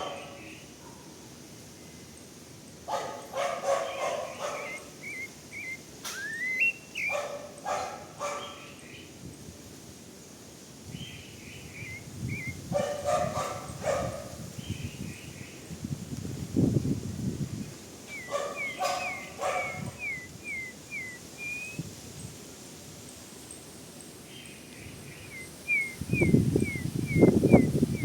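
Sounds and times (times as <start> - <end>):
bird singing warbled phrases: 0.0 - 0.7, 3.1 - 9.2, 10.9 - 15.7, 17.2 - 21.9, 24.2 - 28.0
dog barking: 0.0 - 1.1, 2.9 - 4.9, 7.0 - 8.7, 12.7 - 14.4, 18.2 - 20.0.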